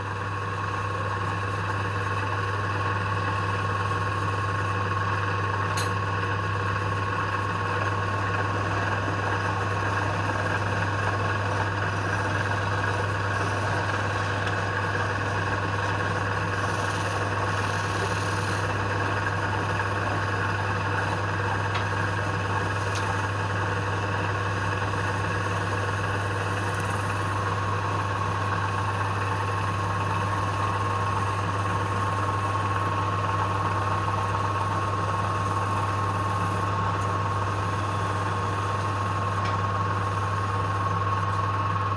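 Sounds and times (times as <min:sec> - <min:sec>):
wood lathe motor humming: 0:00.0 - 0:41.9.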